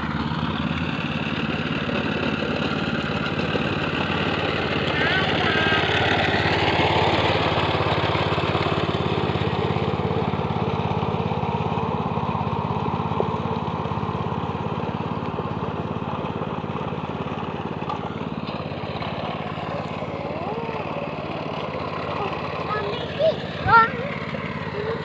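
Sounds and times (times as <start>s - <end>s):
small tractor engine running: 0.0s - 25.0s.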